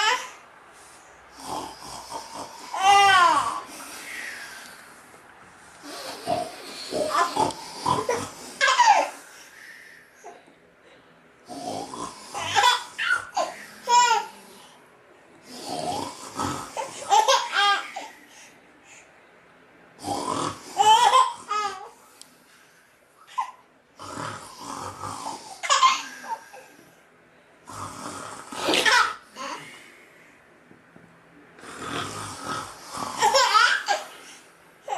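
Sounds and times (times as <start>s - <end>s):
man snoring: 1.3s - 4.9s, 5.8s - 8.6s, 11.4s - 13.9s, 15.4s - 17.1s, 20.0s - 21.5s, 24.0s - 25.6s, 27.6s - 29.9s, 31.6s - 34.2s
baby giggling and laughing: 8.0s - 9.2s, 16.8s - 18.1s, 33.2s - 34.2s.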